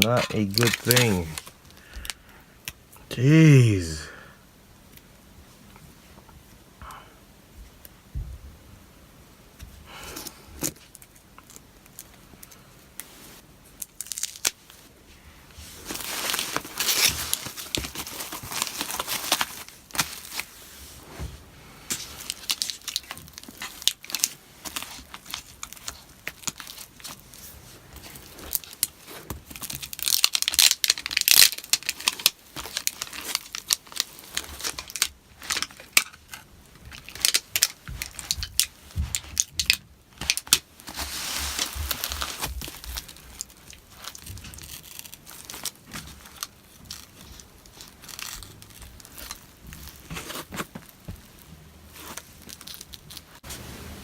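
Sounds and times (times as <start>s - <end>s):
adhesive tearing and crackling: 0.0s - 2.2s, 13.8s - 14.6s, 28.4s - 51.0s.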